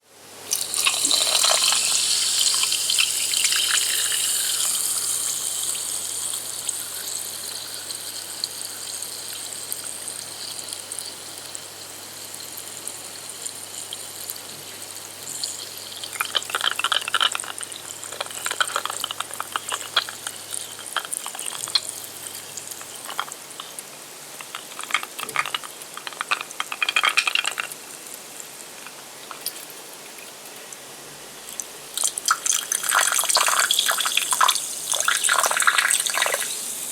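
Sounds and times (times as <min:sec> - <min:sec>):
water hissing: 0:00.5 - 0:12.8, 0:14.4 - 0:26.7, 0:31.5 - 0:36.9
crackling clicks: 0:22.6 - 0:30.8.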